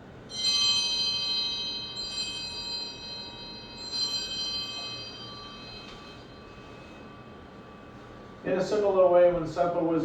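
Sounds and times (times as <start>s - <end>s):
altar bells ringing: 0.3s - 8.4s.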